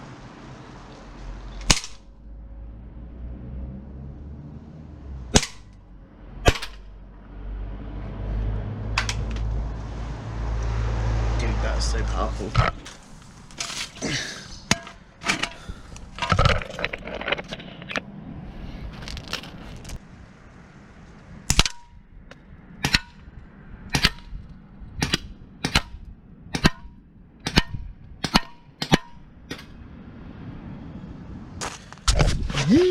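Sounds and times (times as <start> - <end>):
airsoft pistol shots: 1.6 - 2.1, 5.4 - 5.7, 6.5 - 6.9, 25.0 - 29.6.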